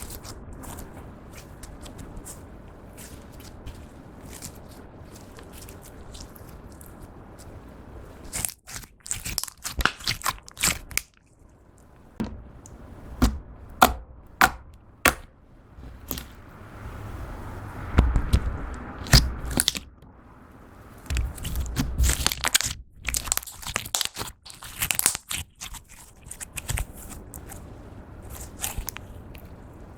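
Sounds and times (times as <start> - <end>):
slime squelching: 0.0 - 16.6, 17.8 - 19.9, 20.6 - 29.6.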